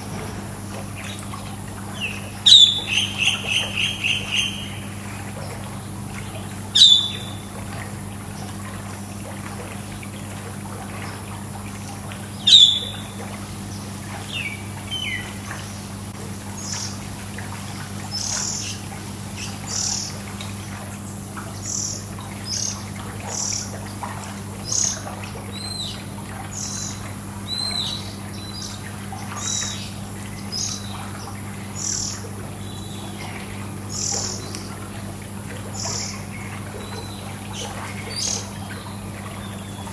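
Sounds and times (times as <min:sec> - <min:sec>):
steady low hum: 0:00.0 - 0:39.9
small birds chirping: 0:01.9 - 0:07.5, 0:12.4 - 0:16.0, 0:18.1 - 0:20.7, 0:21.5 - 0:23.8, 0:24.6 - 0:34.8, 0:35.7 - 0:39.9.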